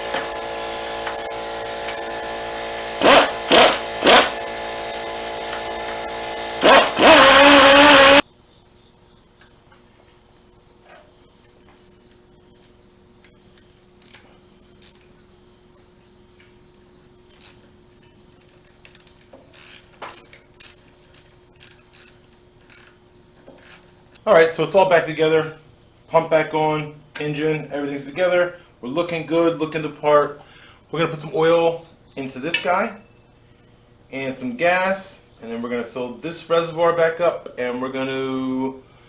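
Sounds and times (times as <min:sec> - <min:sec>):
power tool running: 0:00.0 - 0:08.2
crickets chirping: 0:00.0 - 0:39.0.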